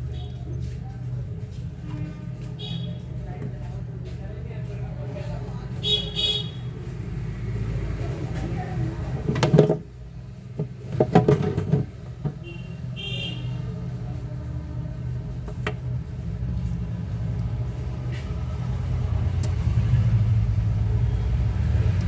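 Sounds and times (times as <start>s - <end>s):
steady low rumble: 12.8s - 22.0s.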